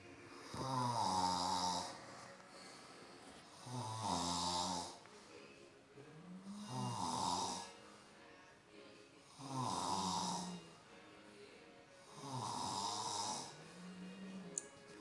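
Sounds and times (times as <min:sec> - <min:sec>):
man snoring: 0:00.4 - 0:02.2, 0:03.5 - 0:05.0, 0:06.2 - 0:07.8, 0:09.3 - 0:10.7, 0:12.1 - 0:14.5.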